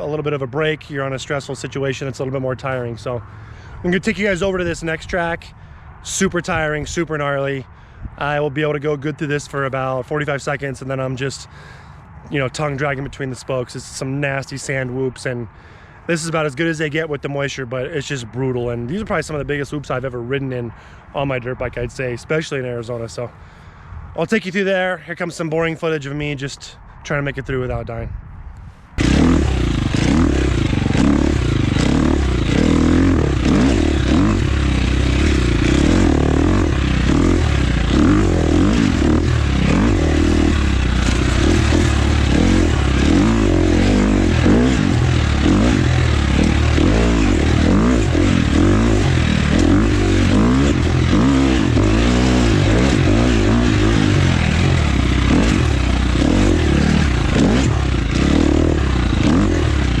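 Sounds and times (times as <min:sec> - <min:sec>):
dirt bike engine revving: 0:29.0 - 1:00.0.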